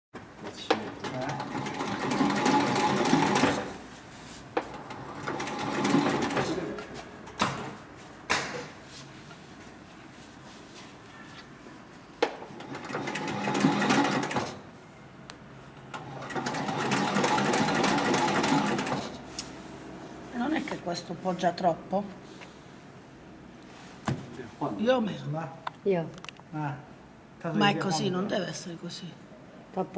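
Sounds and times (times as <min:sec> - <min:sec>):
sewing machine stitching: 0:01.0 - 0:03.8, 0:04.7 - 0:06.8, 0:12.5 - 0:14.6, 0:15.9 - 0:19.2.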